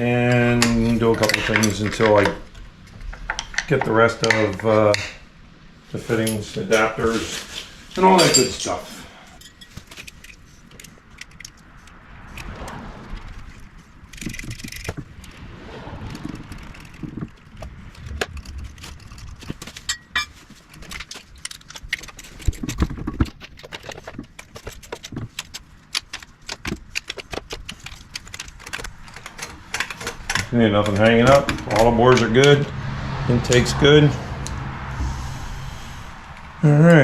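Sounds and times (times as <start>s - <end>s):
metal hand tools clinking: 8.0s - 10.3s, 19.8s - 22.0s.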